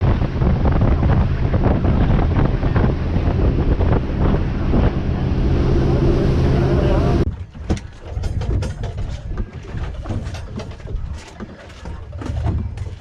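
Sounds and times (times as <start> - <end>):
steady low hum: 0.0 - 7.3
wind buffeting microphone: 0.0 - 13.0.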